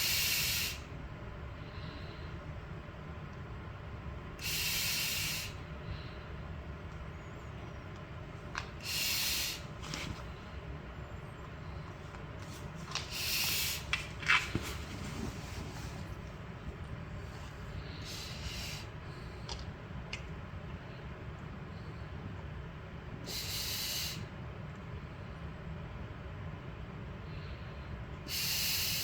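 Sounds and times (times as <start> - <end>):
hissing bursts of air: 0.0 - 0.9, 4.4 - 5.6, 8.8 - 9.8, 13.1 - 13.9, 17.9 - 19.0, 23.3 - 24.2, 28.3 - 29.0.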